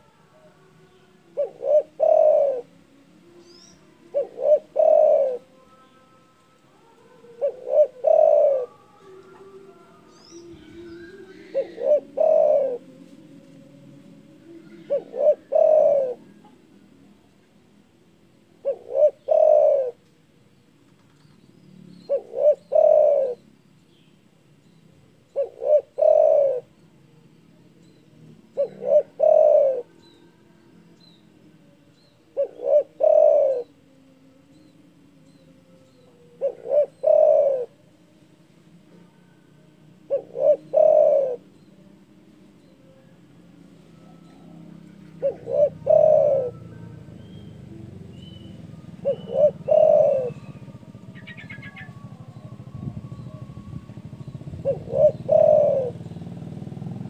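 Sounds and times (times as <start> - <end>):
dove cooing: 0.0 - 5.8, 6.7 - 20.0, 21.0 - 23.7, 25.1 - 57.0
small birds chirping: 6.9 - 13.0, 40.0 - 57.0.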